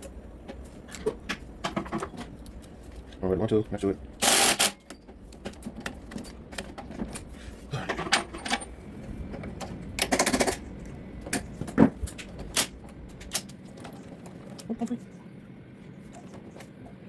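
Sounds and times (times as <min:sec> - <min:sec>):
metal parts clattering: 0:07.9 - 0:08.8.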